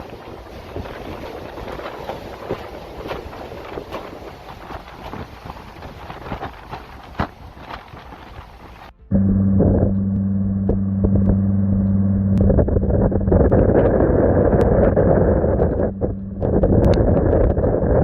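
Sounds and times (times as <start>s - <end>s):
wind buffeting microphone: 0.0s - 10.0s, 12.4s - 18.0s
steady low hum: 8.9s - 18.0s.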